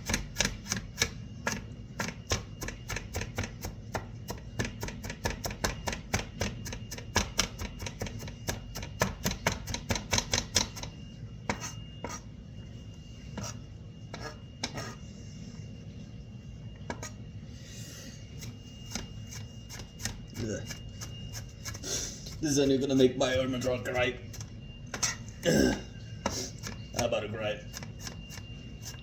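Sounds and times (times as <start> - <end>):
knife chopping onion on board: 0.0 - 10.9.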